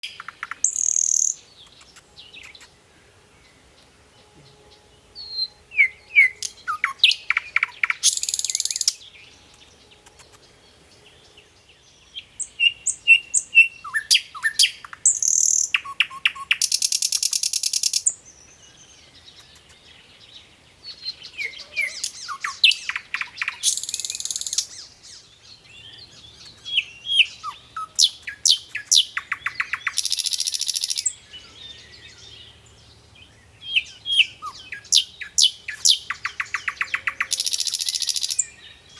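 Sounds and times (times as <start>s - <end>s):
songbird singing: 0.0s - 38.9s.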